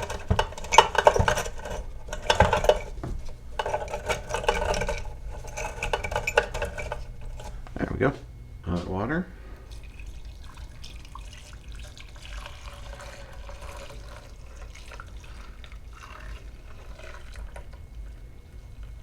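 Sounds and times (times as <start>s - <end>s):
water pouring into a tank: 9.6s - 19.0s.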